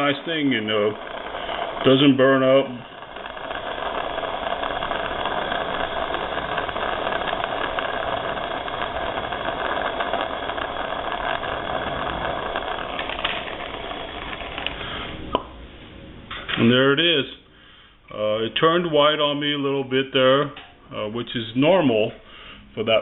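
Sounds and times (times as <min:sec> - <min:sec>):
soldering torch hissing: 0:00.0 - 0:15.4.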